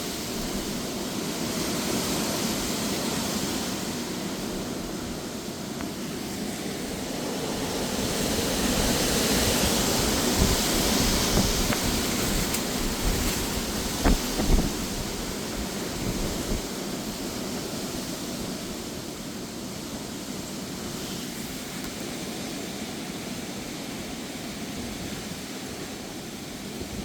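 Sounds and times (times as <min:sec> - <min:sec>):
gusty storm wind rushing: 0:00.0 - 0:19.7
wind buffeting microphone: 0:06.9 - 0:18.7.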